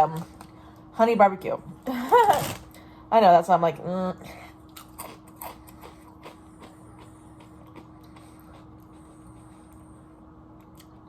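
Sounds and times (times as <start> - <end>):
steady low hum: 0.0 - 11.0
person chewing potato chip: 4.7 - 9.8.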